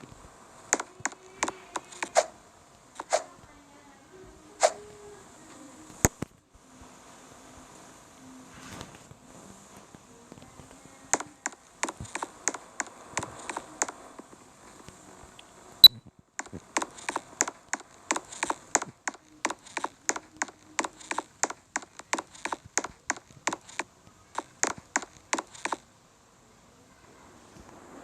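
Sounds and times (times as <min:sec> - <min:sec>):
quick hammer blows: 0:00.7 - 0:02.4, 0:03.0 - 0:03.4, 0:04.6 - 0:04.8
sharp crack: 0:00.7 - 0:02.4, 0:03.0 - 0:03.4, 0:04.6 - 0:04.9, 0:11.1 - 0:14.4, 0:16.4 - 0:25.8.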